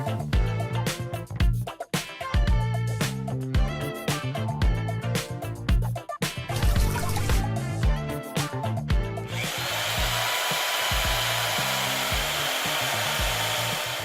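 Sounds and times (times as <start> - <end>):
background music: 0.0 - 14.0
power tool running: 9.3 - 14.0.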